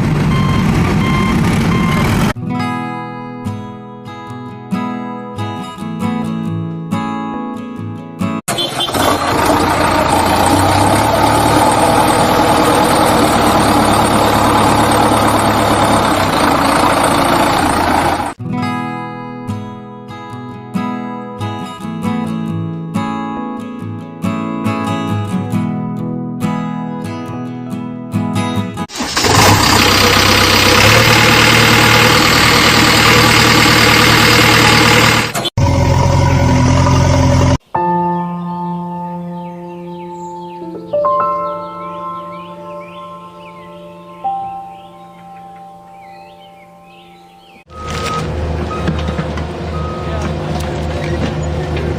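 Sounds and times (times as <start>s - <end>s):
engine idling: 0.0s - 2.4s, 8.5s - 18.4s, 28.9s - 37.6s.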